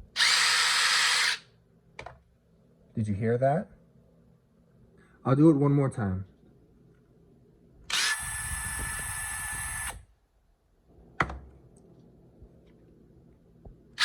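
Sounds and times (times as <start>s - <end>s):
impact driver whining: 0.0s - 1.4s, 7.9s - 10.0s.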